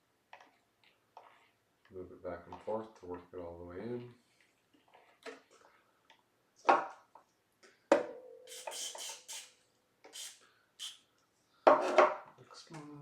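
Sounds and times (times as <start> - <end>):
contact cleaner spray hissing: 8.5 - 11.0.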